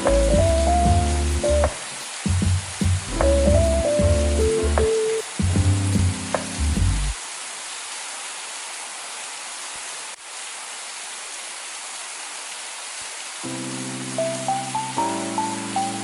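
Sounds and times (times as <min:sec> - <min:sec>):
calm music: 0:00.0 - 0:07.2, 0:13.5 - 0:16.0
steady rain hiss: 0:00.0 - 0:16.0.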